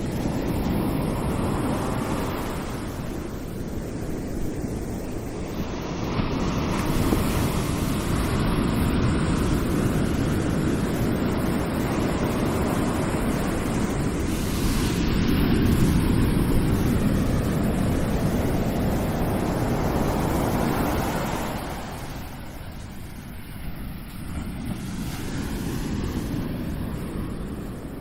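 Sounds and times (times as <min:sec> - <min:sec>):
ocean waves breaking: 0:05.6 - 0:28.0.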